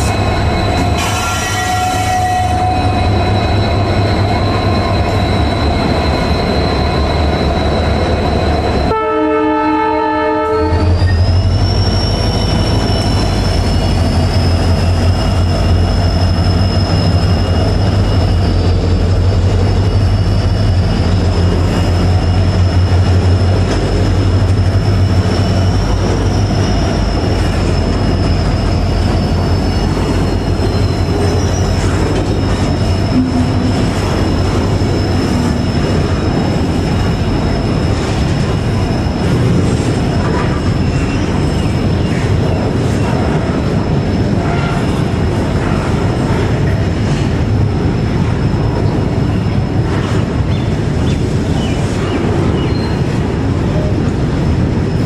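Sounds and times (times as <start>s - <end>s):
locomotive engines humming: 0.0s - 55.0s
locomotive horn: 1.0s - 3.0s, 8.9s - 11.0s, 40.2s - 40.8s.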